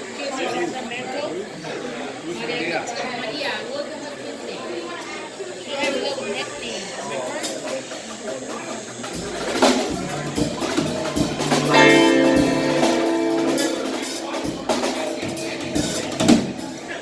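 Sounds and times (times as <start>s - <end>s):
drum hits: 9.2s - 17.0s
guitar strumming: 9.2s - 17.0s.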